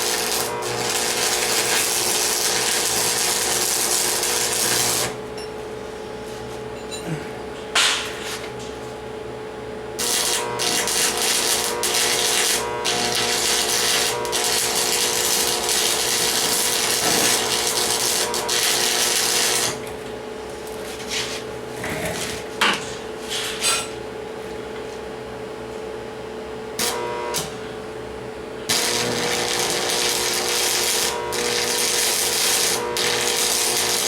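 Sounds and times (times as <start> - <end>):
power tool hissing on steel: 0.0 - 5.2, 10.0 - 19.8, 28.7 - 34.0.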